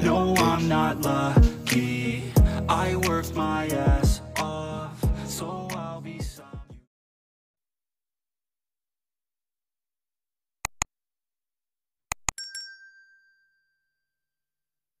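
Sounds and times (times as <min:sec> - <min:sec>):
double clicks: 0:10.6 - 0:10.9, 0:12.1 - 0:12.4
bright ding: 0:12.3 - 0:14.2.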